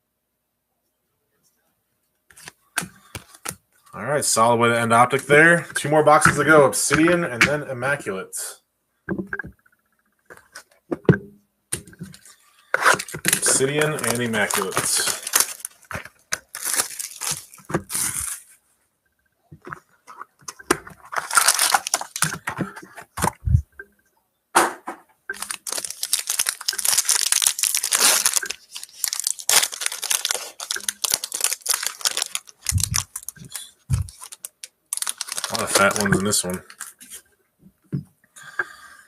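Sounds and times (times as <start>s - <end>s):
plastic wrapping tearing and crumpling: 12.1s - 18.5s, 20.9s - 22.6s, 25.3s - 37.2s.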